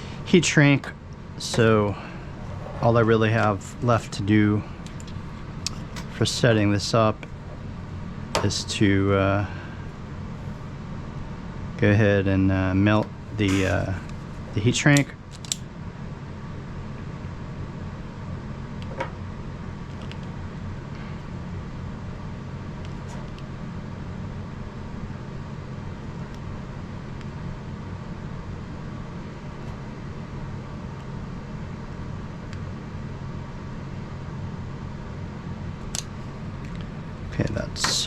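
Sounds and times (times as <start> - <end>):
heat gun humming: 13.3 - 15.6.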